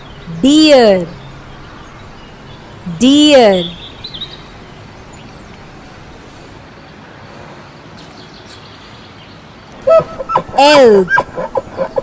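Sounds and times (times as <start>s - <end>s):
outdoor background hiss: 0.0s - 12.0s.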